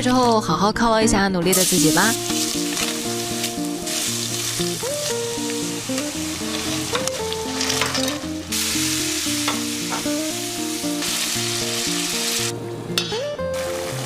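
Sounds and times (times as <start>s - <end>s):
light background music: 0.0s - 14.0s
food sizzling in hot oil: 1.5s - 12.5s, 13.5s - 14.0s.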